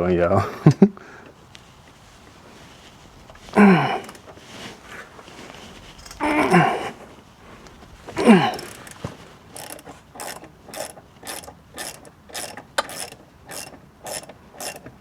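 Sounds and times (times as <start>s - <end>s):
ratchet wrench clicking: 8.5s - 14.9s.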